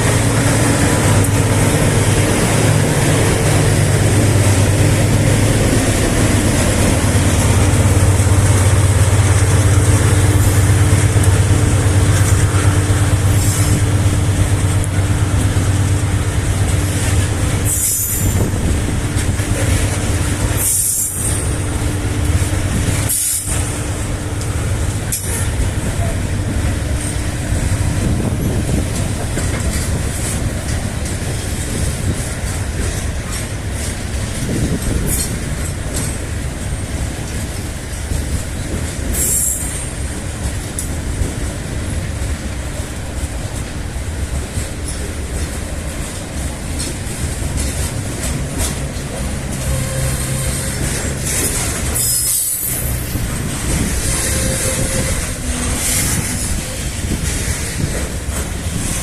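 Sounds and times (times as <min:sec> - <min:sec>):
freight train wagons rumbling: 0:00.0 - 0:59.0
wheel squeals: 0:17.6 - 0:18.6, 0:49.5 - 0:57.2.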